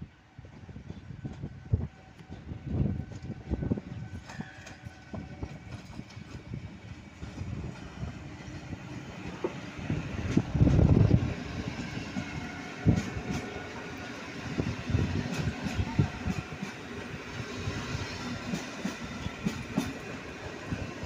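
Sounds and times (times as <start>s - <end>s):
train rumbling: 0.0s - 21.0s
train wheels clicking over rail joints: 11.7s - 13.9s, 14.9s - 17.2s, 18.2s - 20.2s.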